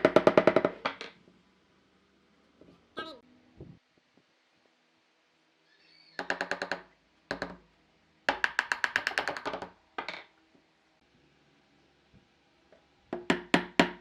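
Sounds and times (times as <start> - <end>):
fast ringing wooden knocks: 0.0 - 1.0, 8.3 - 9.7.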